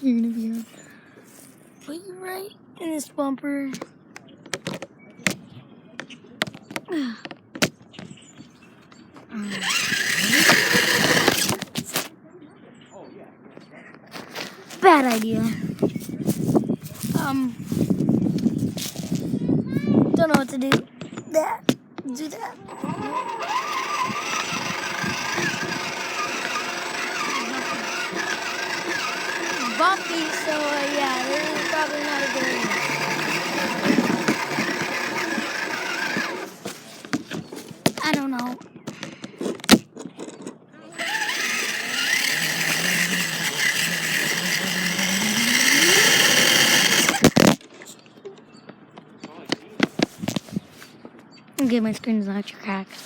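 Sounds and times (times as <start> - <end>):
toy truck motor whining: 9.4 - 12.1, 22.2 - 36.8, 40.2 - 47.5
rattling and ground noise: 9.5 - 12.1, 22.2 - 38.5, 39.6 - 47.7.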